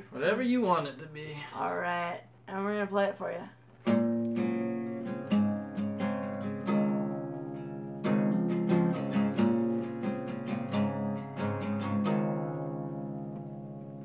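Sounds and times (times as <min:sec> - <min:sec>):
guitar picking and strumming chords: 0:03.8 - 0:14.0.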